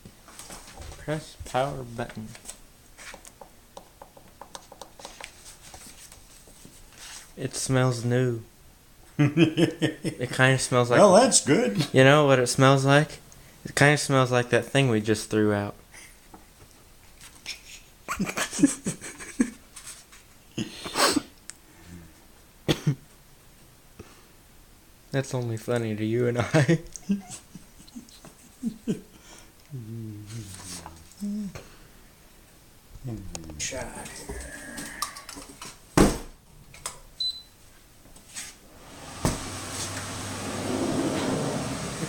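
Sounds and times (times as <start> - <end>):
dehumidifier low hum: 38.6 - 42.0.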